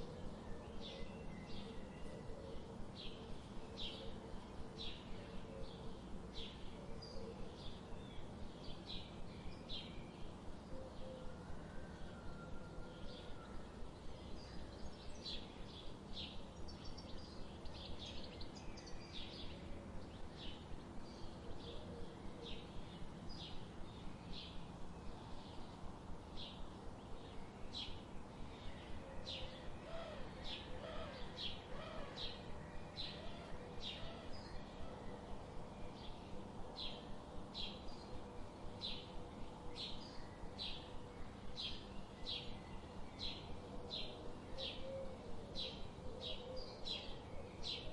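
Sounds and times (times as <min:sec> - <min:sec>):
low background hiss: 0:00.0 - 0:47.9.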